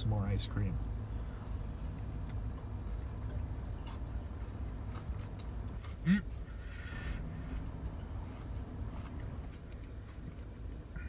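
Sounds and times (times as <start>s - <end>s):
steady low hum: 0.0s - 11.0s
man chewing: 1.2s - 11.0s
man humming mm: 6.0s - 7.2s.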